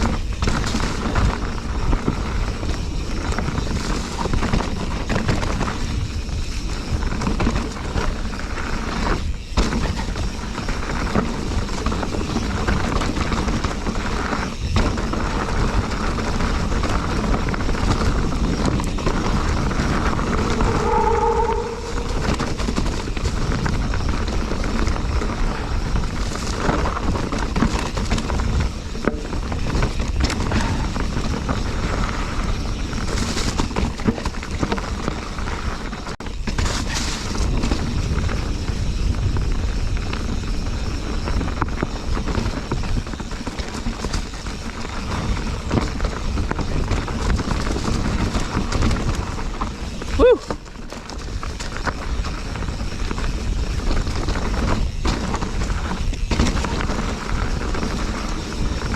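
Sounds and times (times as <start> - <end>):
bike rattling over rocks: 0.0 - 20.4, 22.5 - 58.9
wind on microphone: 0.0 - 36.1.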